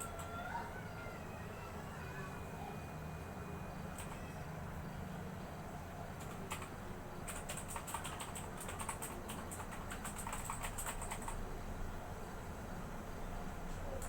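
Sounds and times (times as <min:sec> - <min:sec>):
mechanical keyboard typing: 0:03.9 - 0:04.2, 0:06.2 - 0:11.4.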